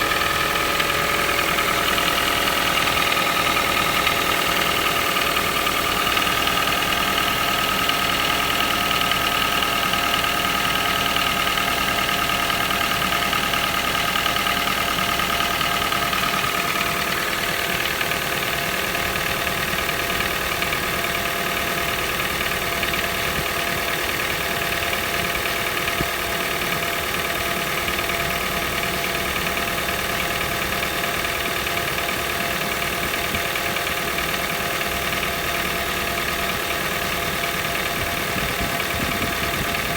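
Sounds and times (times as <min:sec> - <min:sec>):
steady high engine tone: 0:00.0 - 0:21.0
car engine idling with knock: 0:00.0 - 0:39.9.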